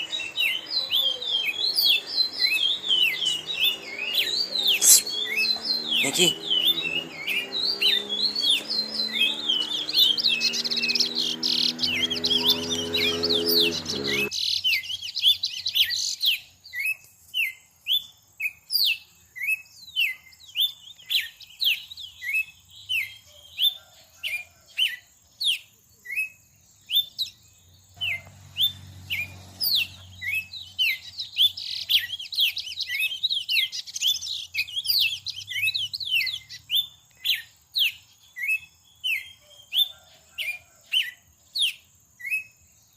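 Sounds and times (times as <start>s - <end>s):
songbird chirping: 0.0s - 42.9s.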